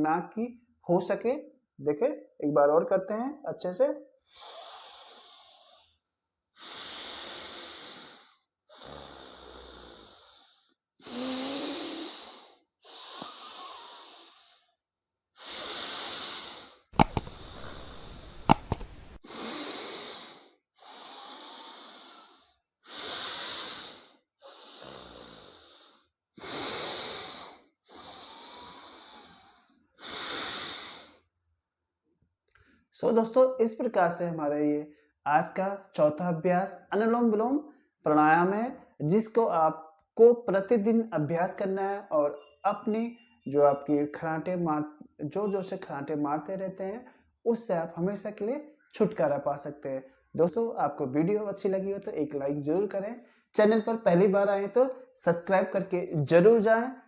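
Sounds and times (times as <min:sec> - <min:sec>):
forceful nostril breathing: 0:04.2 - 0:14.8, 0:15.4 - 0:31.3
sharp clicks: 0:17.0 - 0:19.2.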